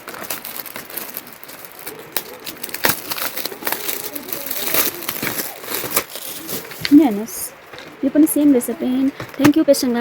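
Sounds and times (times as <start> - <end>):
gift wrapping crinkling and tearing: 0.0 - 7.9.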